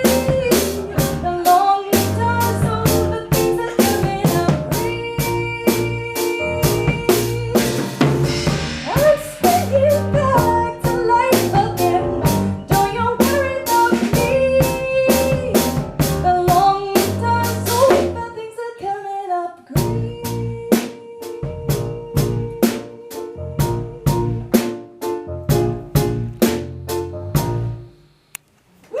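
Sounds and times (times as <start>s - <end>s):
bass line: 0.0s - 18.3s, 21.4s - 22.7s, 23.4s - 28.1s
drum kit beat: 0.0s - 18.3s, 19.8s - 28.1s.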